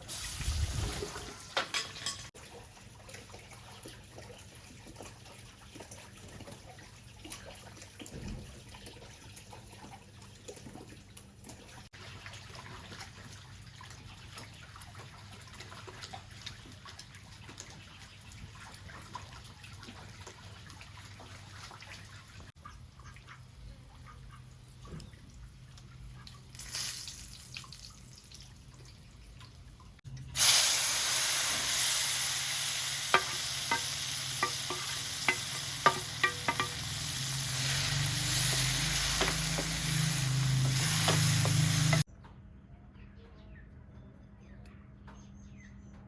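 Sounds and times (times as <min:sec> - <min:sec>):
food sizzling in a pan: 0:30.4 - 0:42.1
sharp popping of frying: 0:30.4 - 0:42.1.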